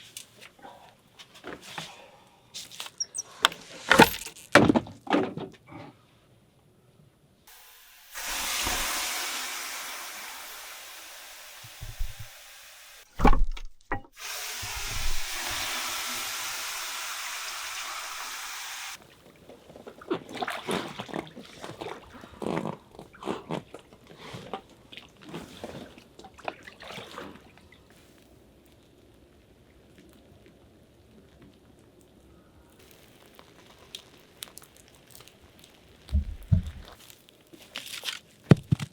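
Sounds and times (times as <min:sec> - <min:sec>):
rushing water hiss: 0:07.5 - 0:13.1, 0:14.2 - 0:19.0
steady hiss: 0:07.5 - 0:13.1, 0:14.2 - 0:19.0
loud thumps: 0:11.8 - 0:12.3
patter and crackle: 0:27.9 - 0:38.9.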